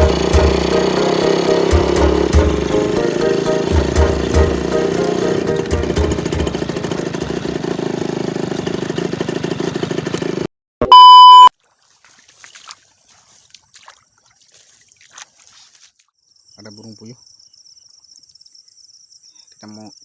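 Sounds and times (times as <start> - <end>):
loud pure tone beep: 10.8 - 11.5.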